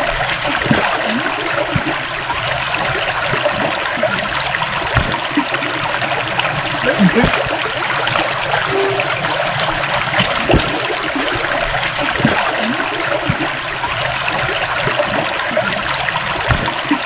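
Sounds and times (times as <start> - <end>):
stream trickling and gurgling: 12.3 - 17.0.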